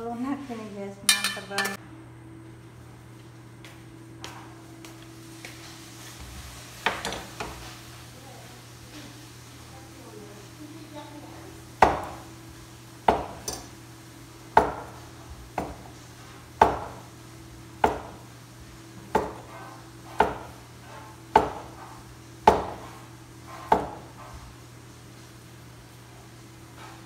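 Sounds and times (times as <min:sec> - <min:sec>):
heavy ringing kitchen knocks: 0:11.8 - 0:12.2, 0:13.0 - 0:13.7, 0:14.5 - 0:15.0, 0:15.6 - 0:15.9, 0:16.6 - 0:17.0, 0:17.8 - 0:18.2, 0:19.1 - 0:19.5, 0:20.2 - 0:20.6, 0:21.3 - 0:21.8, 0:22.4 - 0:22.9, 0:23.6 - 0:24.2.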